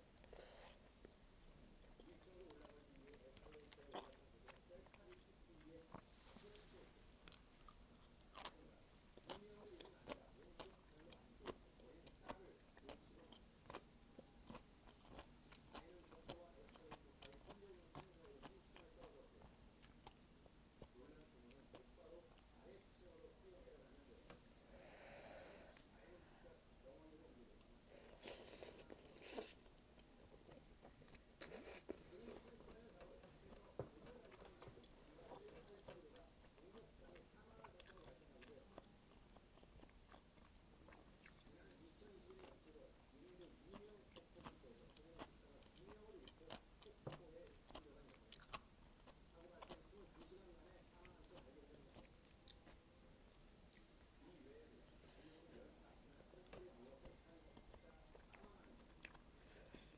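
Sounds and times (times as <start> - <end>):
quiet close-up chewing: 0.0 - 59.9.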